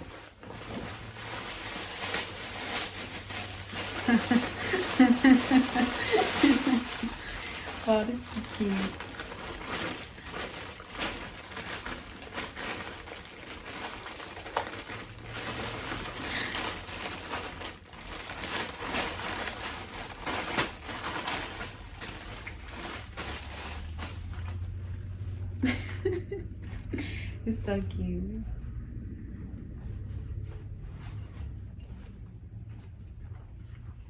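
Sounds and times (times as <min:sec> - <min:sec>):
gift packaging crinkling: 0:00.0 - 0:27.1.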